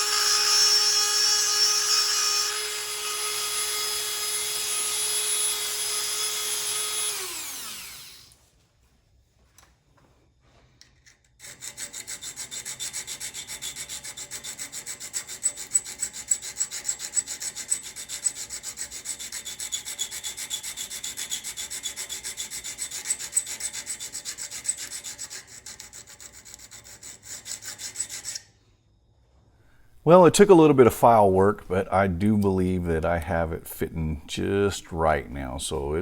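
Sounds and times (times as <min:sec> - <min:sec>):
hand file scraping steel: 0:00.0 - 0:08.4, 0:10.8 - 0:28.6.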